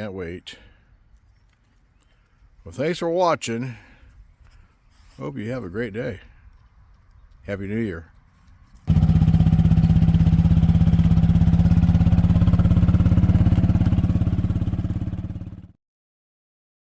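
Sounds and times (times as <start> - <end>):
pulsing engine-like drone: 8.9 - 15.7.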